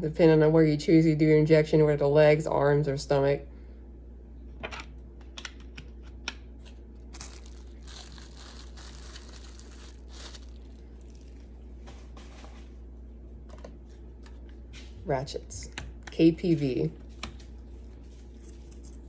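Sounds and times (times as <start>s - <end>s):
low electrical hum: 0.0s - 19.0s
packaging crinkling and tearing: 6.6s - 12.4s.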